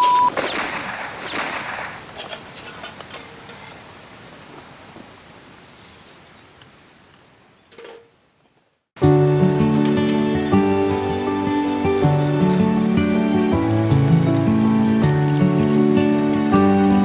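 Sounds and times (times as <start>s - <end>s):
low hiss with crackles: 0.0s - 17.0s
gentle music: 9.0s - 17.0s.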